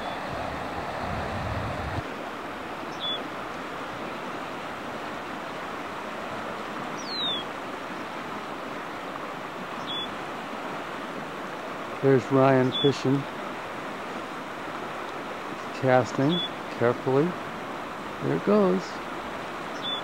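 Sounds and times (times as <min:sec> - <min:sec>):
river current rushing: 0:00.0 - 0:20.0
high bird chirps: 0:02.9 - 0:03.2, 0:09.8 - 0:10.1.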